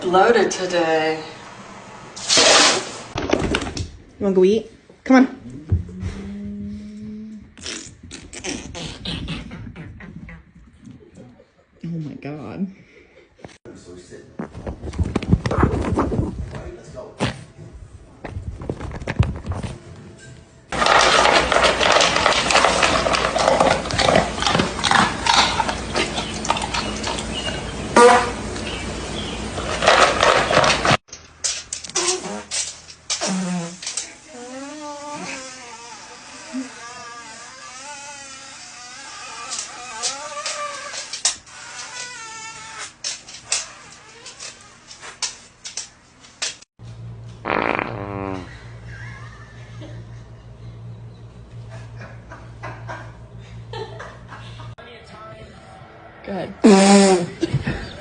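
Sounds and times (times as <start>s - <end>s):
steady low hum: 4.6s - 20.7s, 46.8s - 58.0s
dog farting: 7.5s - 11.2s, 20.7s - 28.4s, 31.9s - 45.3s, 47.4s - 48.7s, 56.6s - 57.8s
dog passing gas: 47.4s - 48.8s, 56.6s - 57.4s.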